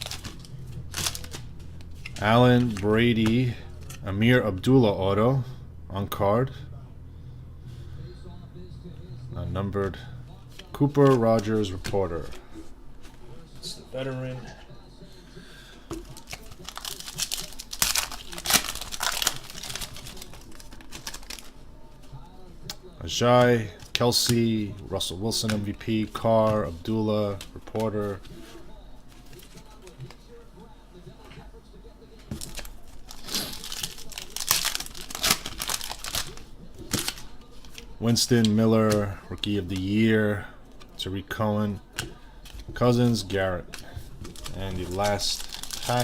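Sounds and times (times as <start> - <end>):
wrapper crinkling and tearing: 0.0 - 4.0, 16.0 - 21.6, 32.4 - 39.5, 41.9 - 46.0.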